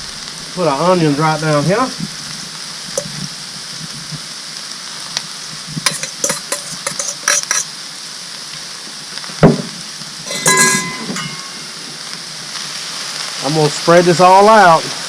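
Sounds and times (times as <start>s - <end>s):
vegetables sizzling on griddle: 0.0s - 15.0s
metal spatula scraping griddle: 5.8s - 7.7s, 10.3s - 11.7s.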